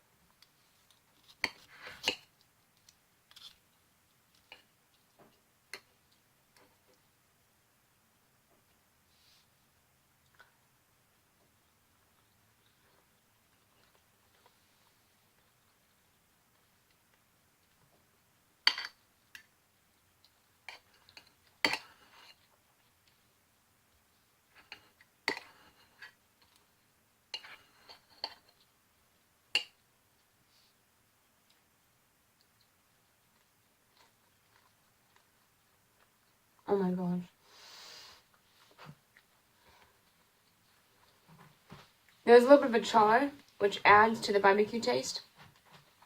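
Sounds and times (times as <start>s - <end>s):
cutlery tapping on plate: 18.7s - 19.0s.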